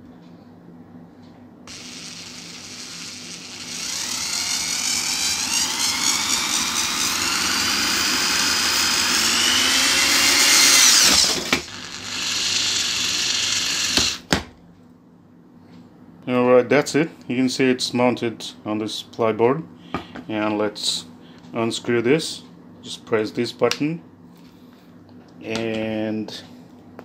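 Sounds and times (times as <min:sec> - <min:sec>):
electric screwdriver motor whining: 0:01.7 - 0:14.3.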